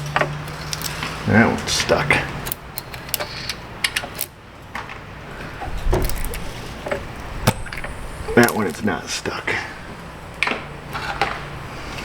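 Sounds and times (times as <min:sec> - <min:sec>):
sharp clicks and taps of parts: 0:02.4 - 0:05.0.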